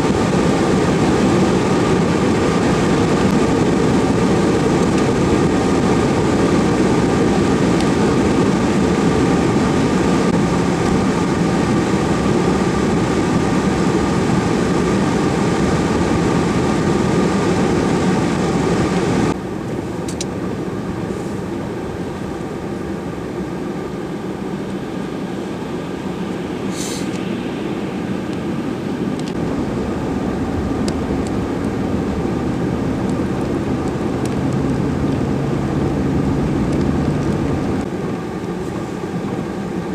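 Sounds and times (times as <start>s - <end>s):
heavy vehicle engine running: 0.0s - 39.9s
brief hiss: 26.7s - 27.2s.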